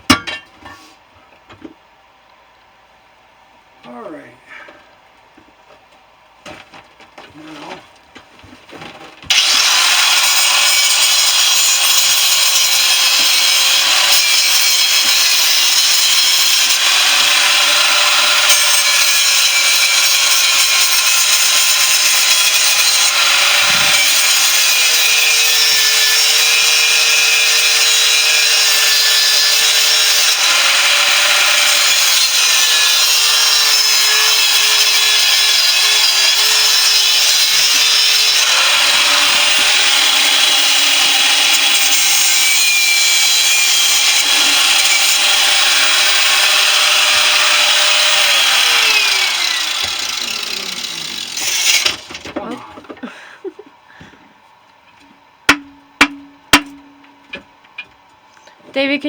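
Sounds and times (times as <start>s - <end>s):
power tool cutting metal: 9.3s - 52.2s.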